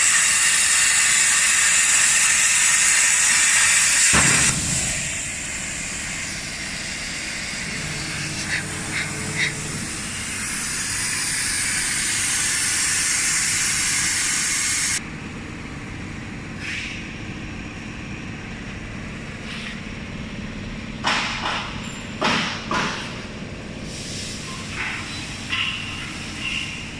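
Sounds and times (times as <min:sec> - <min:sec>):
loud venting hiss: 0:00.0 - 0:15.0, 0:23.8 - 0:24.6
steady machine hum: 0:00.0 - 0:24.0
sharp machine clunks: 0:04.1 - 0:05.2.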